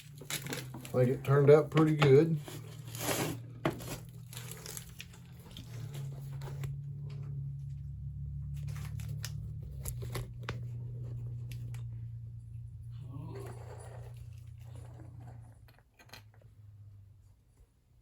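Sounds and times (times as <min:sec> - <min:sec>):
light clicks and rustles of handling: 0:00.0 - 0:12.7
steady low hum: 0:00.0 - 0:15.7.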